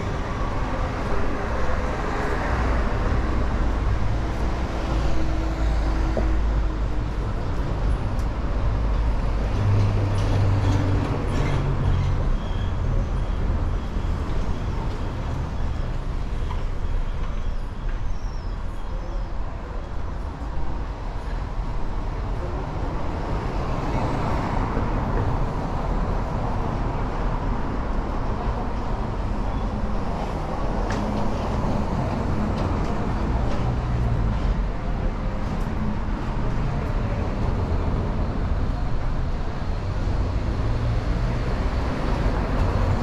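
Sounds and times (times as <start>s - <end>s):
vehicle engines passing: 20.3s - 43.0s.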